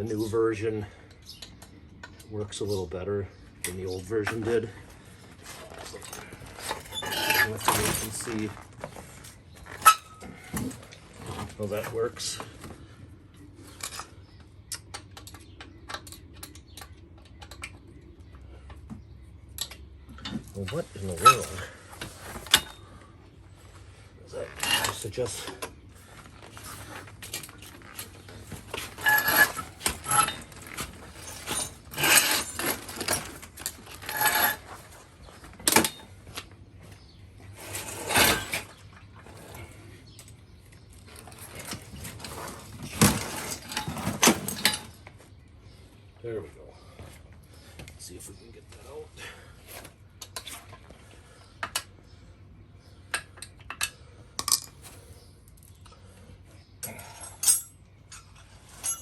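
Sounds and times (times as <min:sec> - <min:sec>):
tool handling noises: 0:03.7 - 0:12.9, 0:18.5 - 0:23.0, 0:24.3 - 0:45.5, 0:56.8 - 0:59.0
metal parts scraping: 0:05.6 - 0:08.6, 0:09.7 - 0:11.8, 0:20.3 - 0:22.8, 0:24.3 - 0:25.7, 0:26.6 - 0:35.0, 0:37.6 - 0:39.7, 0:41.1 - 0:45.0, 0:56.8 - 0:59.0.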